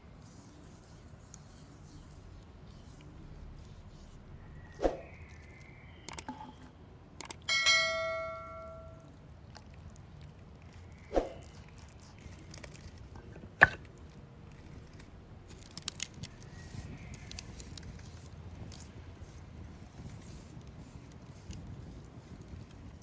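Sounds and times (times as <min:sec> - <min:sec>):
utensil ringing clink: 0:07.5 - 0:09.1.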